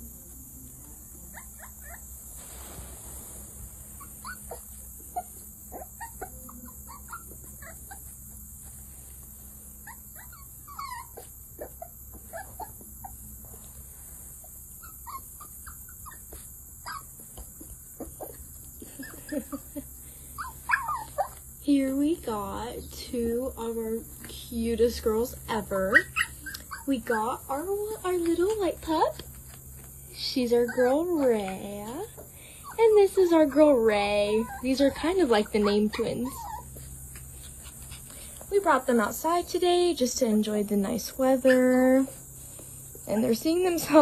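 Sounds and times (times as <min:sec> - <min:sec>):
steady high hiss: 0:00.0 - 0:07.2
puppies whimpering and yipping: 0:03.9 - 0:08.4, 0:09.8 - 0:13.2, 0:14.4 - 0:21.5, 0:25.2 - 0:29.3, 0:30.1 - 0:39.4, 0:41.2 - 0:42.2.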